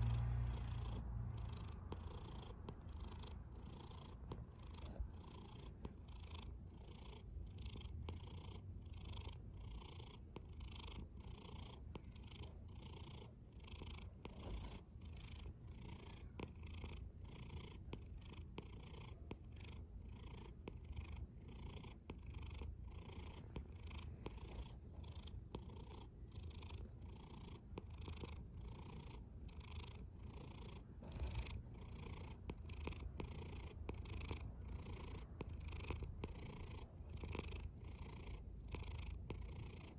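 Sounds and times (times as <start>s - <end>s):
cat purring: 0.0s - 39.9s.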